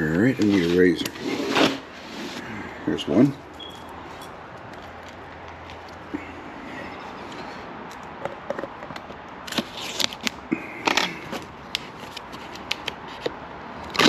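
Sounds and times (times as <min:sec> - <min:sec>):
clicks and scrapes of handling: 0:00.2 - 0:02.5, 0:07.0 - 0:14.0.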